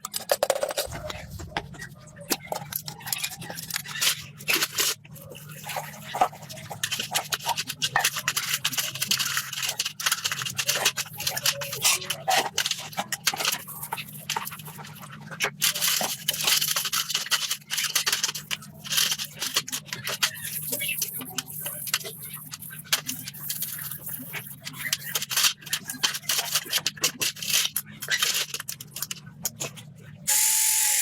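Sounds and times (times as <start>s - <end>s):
steady low hum: 0.8s - 4.3s.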